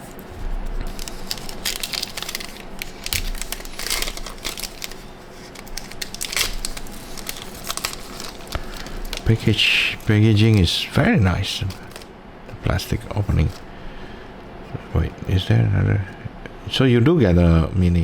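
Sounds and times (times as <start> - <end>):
plastic wrapper tearing and crinkling: 0.0 - 12.1.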